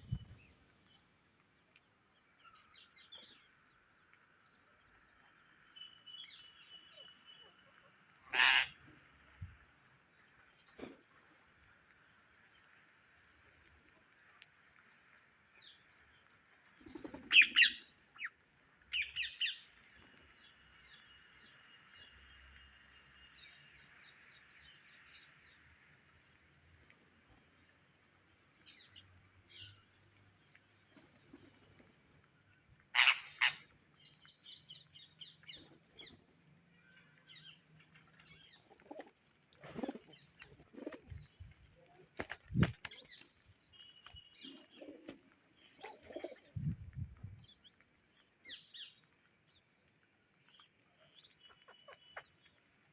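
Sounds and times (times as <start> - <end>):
parrots squawking and chirping: 8.3 - 8.8, 32.9 - 33.7.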